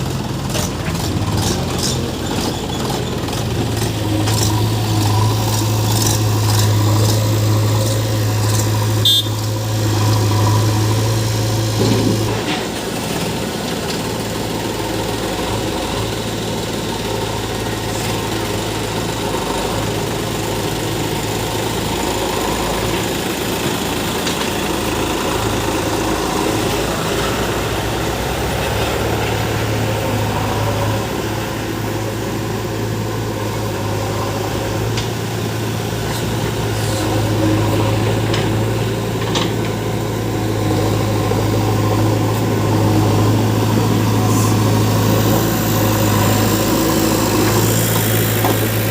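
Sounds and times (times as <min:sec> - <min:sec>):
diesel engines running: 0:00.0 - 0:48.9.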